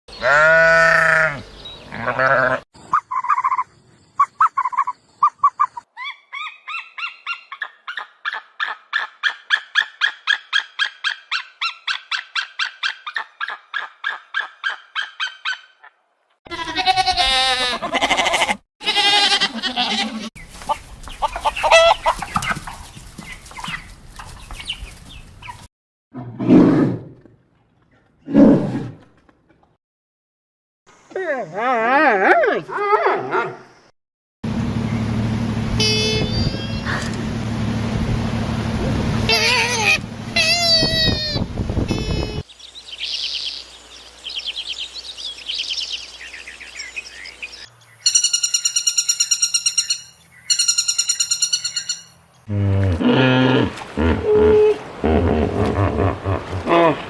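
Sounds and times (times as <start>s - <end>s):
animal calls: 39.3s - 41.4s
fast pulsing call: 39.3s - 42.4s.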